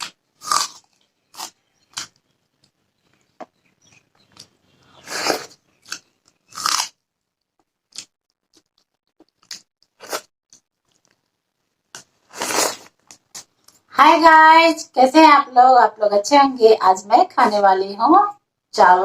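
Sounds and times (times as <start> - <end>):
crunchy chewing: 0.0 - 13.9.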